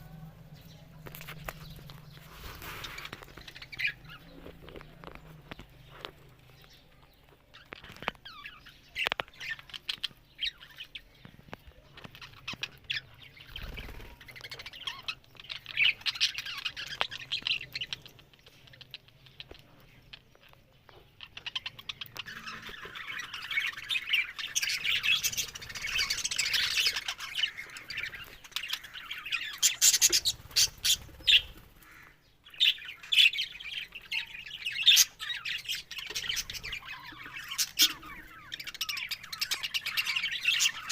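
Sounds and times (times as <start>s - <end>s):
budgerigars chattering: 21.2s - 40.9s.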